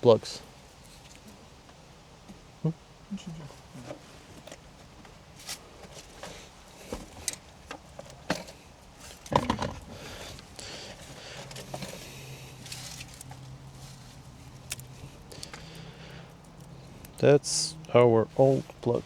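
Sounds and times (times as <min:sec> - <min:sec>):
low steady hum: 0:00.0 - 0:19.0
handling noise: 0:03.8 - 0:19.0
wire cutters snipping: 0:14.4 - 0:17.3
plastic connectors clicking: 0:14.5 - 0:17.3.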